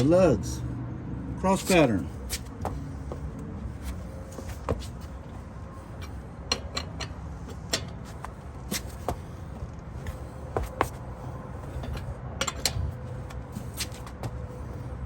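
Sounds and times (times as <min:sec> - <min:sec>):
lug wrench clicks and clinks: 0:06.5 - 0:08.0, 0:11.8 - 0:12.8.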